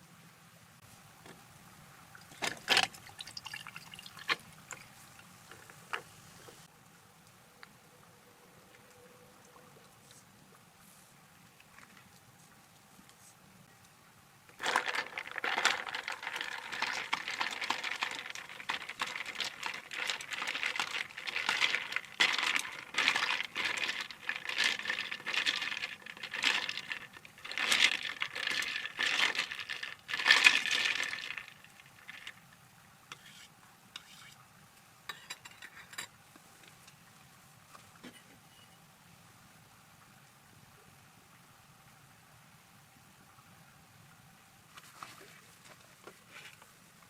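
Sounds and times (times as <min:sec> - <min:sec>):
crinkling and rustling: 0:14.5 - 0:32.4, 0:44.7 - 0:46.8.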